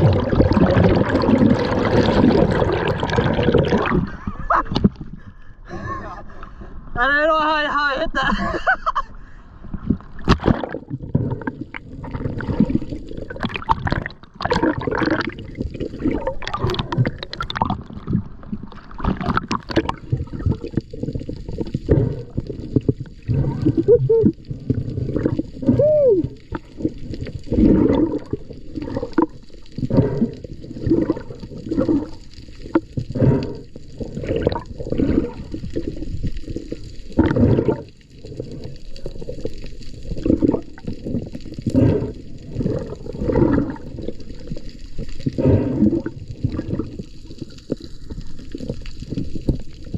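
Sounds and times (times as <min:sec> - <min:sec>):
underwater rushing and gurgling water: 0:00.0 - 0:05.4, 0:09.2 - 0:49.9.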